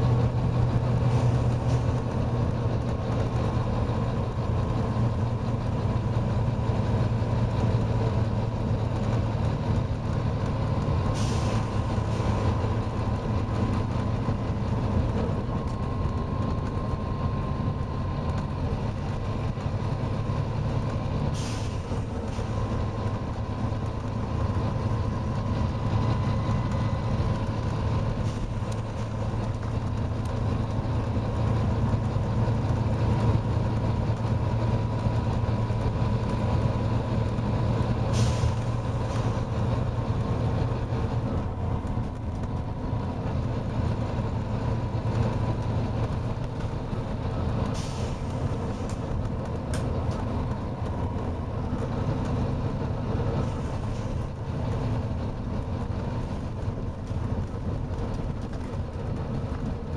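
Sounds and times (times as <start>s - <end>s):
bus diesel engine running: 0.0s - 59.9s
short air hisses: 11.2s - 12.3s, 21.4s - 22.4s, 38.1s - 39.2s, 47.8s - 48.4s.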